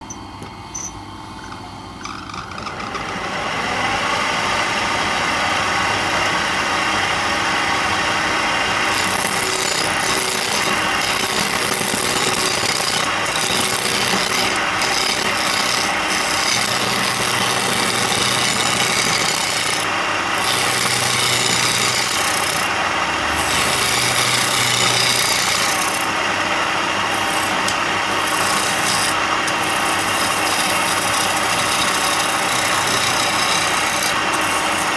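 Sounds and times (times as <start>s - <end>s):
power tool rasping wood: 7.0s - 34.9s.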